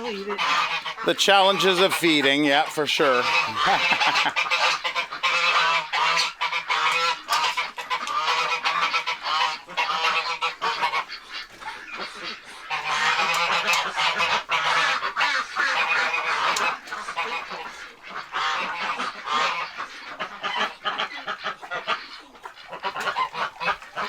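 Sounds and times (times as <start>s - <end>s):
geese honking: 0.0s - 24.0s.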